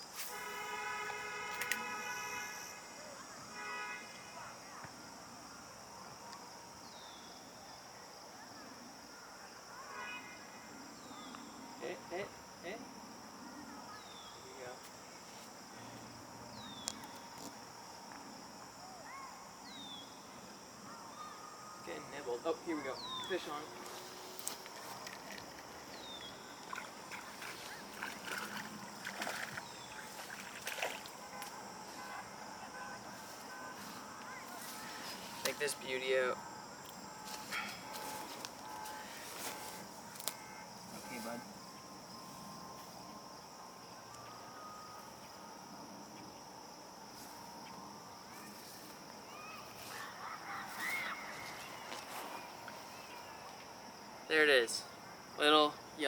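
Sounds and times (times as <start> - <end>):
crickets trilling: 0.0 - 56.0
water splashing: 24.7 - 31.7.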